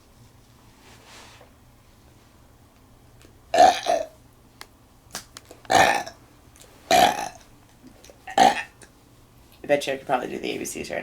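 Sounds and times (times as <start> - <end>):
woman burping: 3.6 - 4.2, 5.7 - 6.2, 6.9 - 7.4, 8.3 - 8.8.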